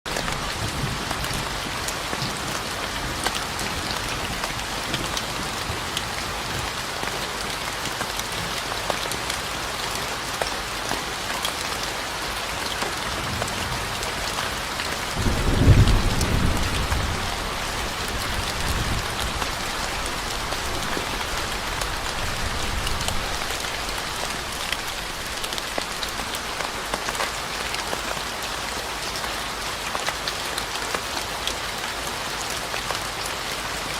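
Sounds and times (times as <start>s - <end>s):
steady rain falling: 0.1s - 33.9s
low rumble of thunder: 13.2s - 25.4s.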